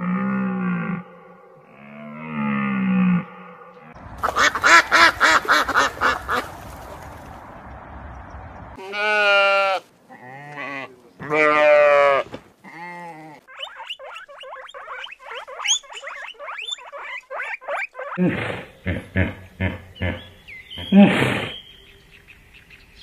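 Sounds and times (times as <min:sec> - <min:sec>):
animal calls: 0:08.8 - 0:22.0.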